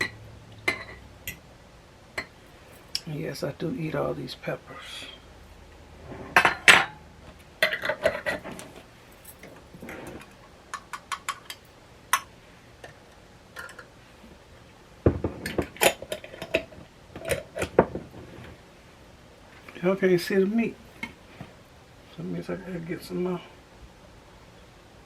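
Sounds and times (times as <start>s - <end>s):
metal utensils clinking on dishes: 0.0s - 1.4s.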